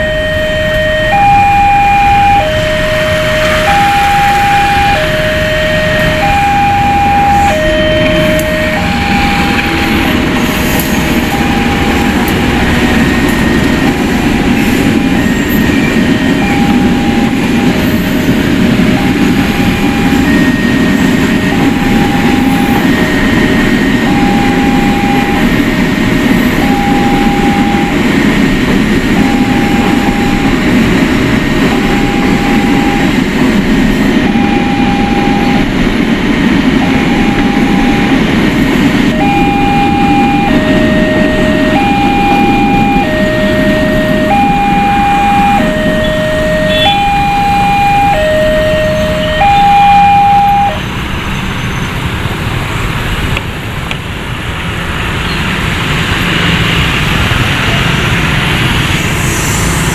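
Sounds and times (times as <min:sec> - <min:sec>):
level crossing alarm high-low tone: 0:00.0 - 0:50.9
train rumbling past: 0:00.0 - 0:59.9.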